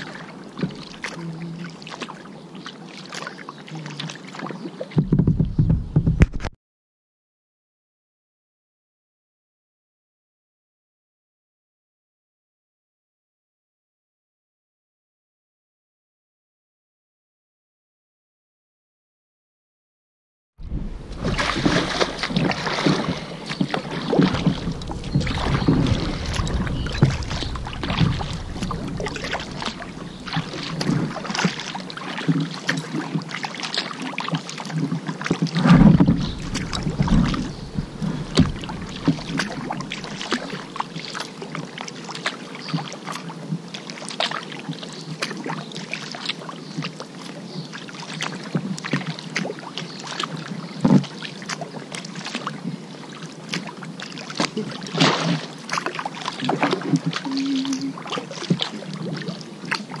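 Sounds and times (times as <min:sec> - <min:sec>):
paddle splashing in water: 0:00.0 - 0:06.6, 0:20.6 - 1:00.0
deep bump: 0:05.0 - 0:06.6, 0:20.6 - 0:31.5, 0:35.7 - 0:40.8
water dripping: 0:20.6 - 0:33.9, 0:35.8 - 0:41.2.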